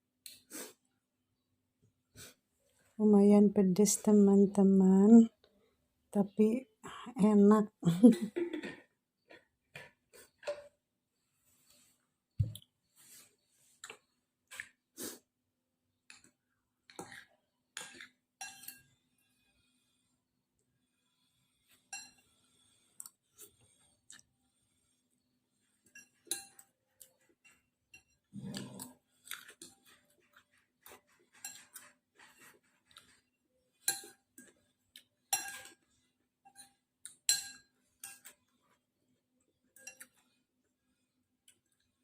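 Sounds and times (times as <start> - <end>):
cutlery clinking against a bowl: 17.0 - 19.0, 21.7 - 22.3, 25.8 - 38.6, 39.6 - 40.3
eating noises: 28.3 - 31.2.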